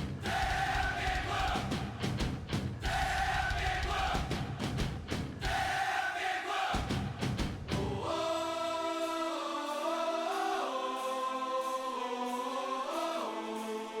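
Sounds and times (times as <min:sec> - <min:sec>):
choir singing held chords: 0:00.0 - 0:02.2, 0:02.8 - 0:04.7, 0:05.4 - 0:14.0
drum hits: 0:00.0 - 0:05.8, 0:06.8 - 0:08.1.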